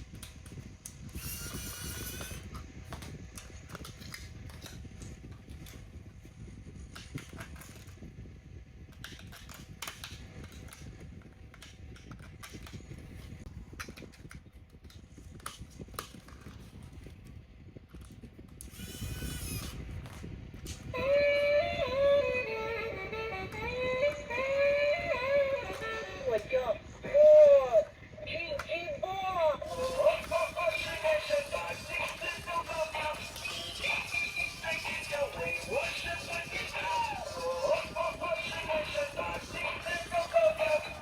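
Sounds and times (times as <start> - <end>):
plastic toy parts clicking: 7.0 - 8.0, 8.9 - 10.8, 15.3 - 16.6, 29.7 - 41.0.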